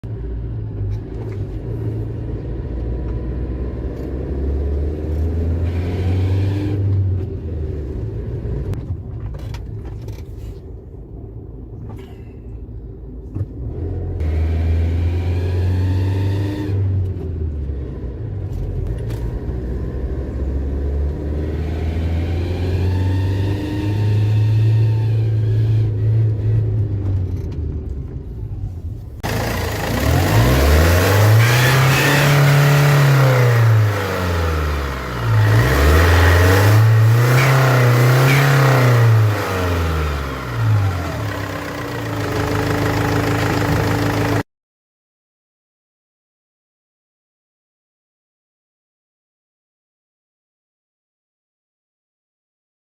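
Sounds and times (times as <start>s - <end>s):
car engine revving: 29.2s - 44.4s.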